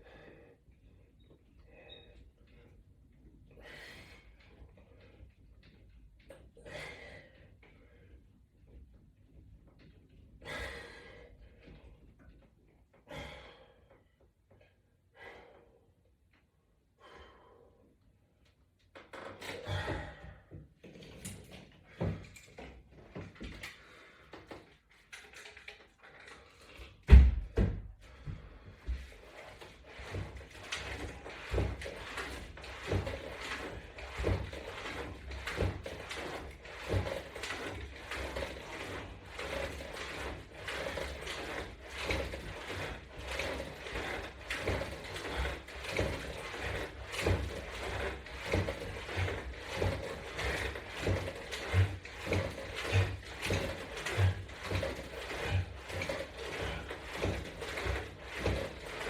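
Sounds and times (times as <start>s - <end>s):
thumps from exercise equipment: 19.0s - 23.6s, 27.0s - 59.0s
rattles: 29.2s - 59.0s.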